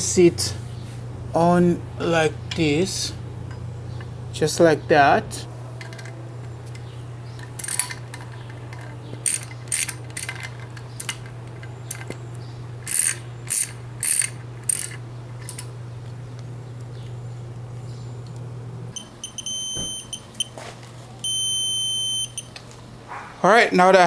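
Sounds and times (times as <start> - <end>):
steady low hum: 0.0 - 24.0
ratchet wrench clicking: 7.4 - 12.1, 12.8 - 15.7.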